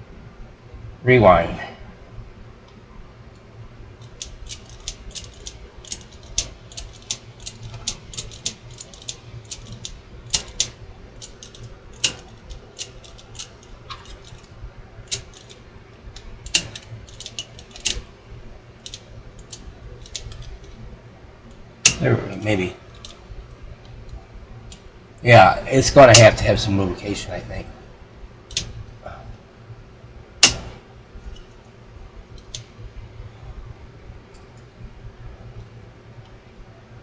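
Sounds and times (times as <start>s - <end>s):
cassette deck keys clicking: 2.7s - 25.2s, 26.0s - 26.6s, 28.5s - 29.2s, 30.4s - 33.4s.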